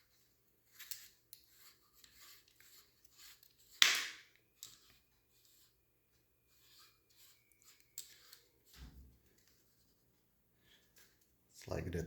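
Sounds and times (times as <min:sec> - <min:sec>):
small parts scraping and clicking: 0:00.7 - 0:05.7, 0:06.5 - 0:08.7.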